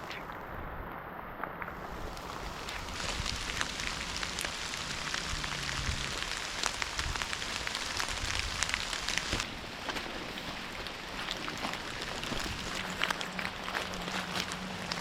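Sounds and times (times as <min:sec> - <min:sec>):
steady rain in woodland: 0:00.0 - 0:15.0
raindrops ticking: 0:01.6 - 0:09.5.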